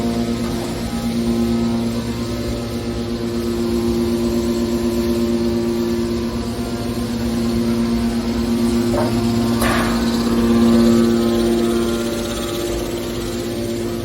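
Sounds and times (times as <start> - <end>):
hydraulic baler humming: 0.0 - 14.0
metallic knocks: 8.8 - 10.4.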